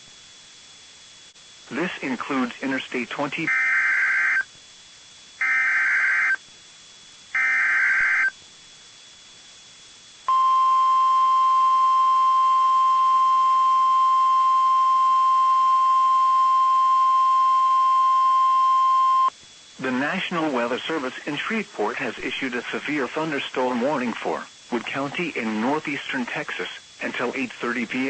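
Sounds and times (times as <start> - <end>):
screechy digital data bursts: 1.8 - 4.5, 5.4 - 6.4, 7.4 - 8.4
steady alarm tone: 3.2 - 4.5, 5.4 - 6.4, 7.3 - 8.4, 10.3 - 19.3.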